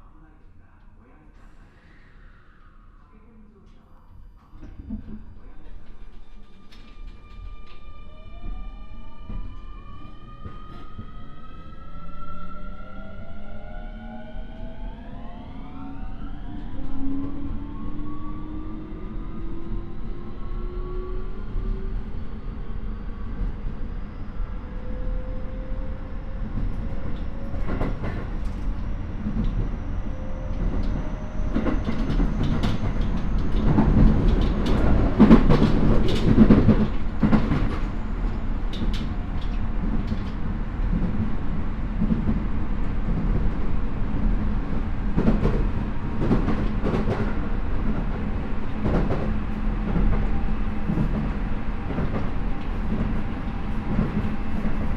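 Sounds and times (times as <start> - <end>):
train rolling rumble: 13.0 - 54.9.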